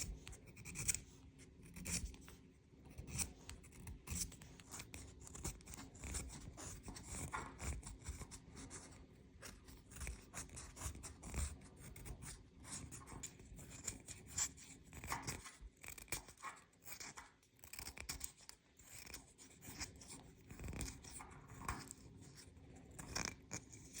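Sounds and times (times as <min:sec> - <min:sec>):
pencil being sharpened: 0:00.0 - 0:02.3, 0:02.9 - 0:24.0.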